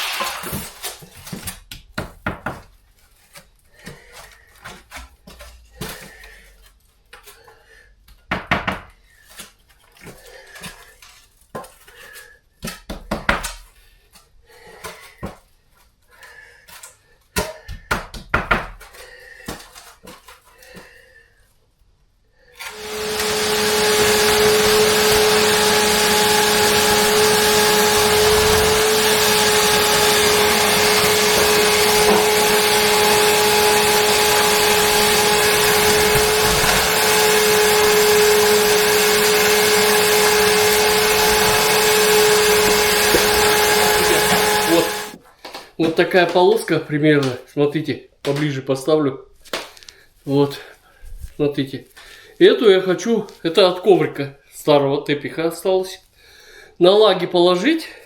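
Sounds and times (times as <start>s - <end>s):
vacuum cleaner running: 22.6s - 45.2s.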